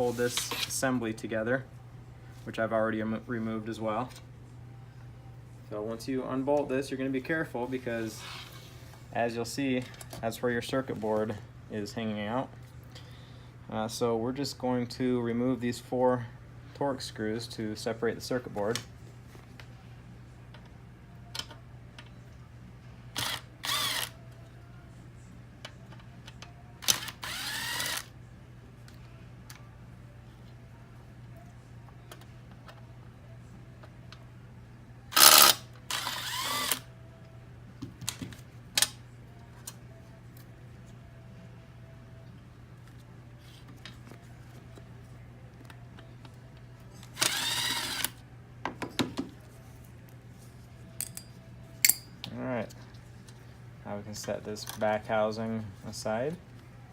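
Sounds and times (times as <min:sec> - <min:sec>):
electric screwdriver spinning: 0:23.2 - 0:24.1, 0:26.8 - 0:28.1, 0:35.2 - 0:36.9, 0:47.2 - 0:48.2.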